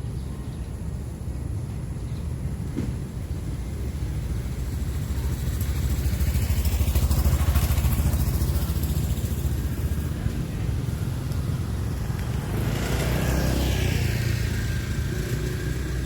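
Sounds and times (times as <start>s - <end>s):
engine running with low pulsing: 0.0s - 16.0s.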